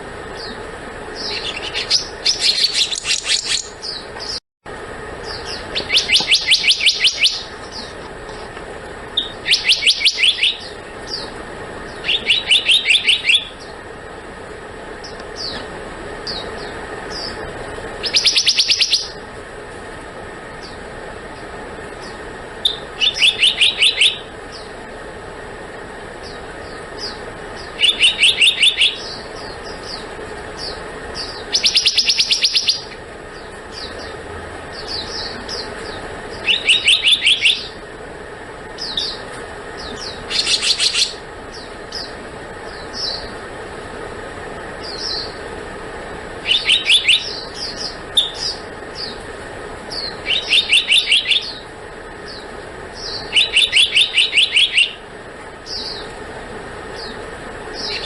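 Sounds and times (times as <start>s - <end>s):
bird calling sharp high notes: 5.3s - 7.8s, 9.2s - 11.2s, 11.9s - 13.7s, 22.6s - 24.3s, 36.4s - 37.8s, 50.0s - 51.6s, 53.0s - 55.0s.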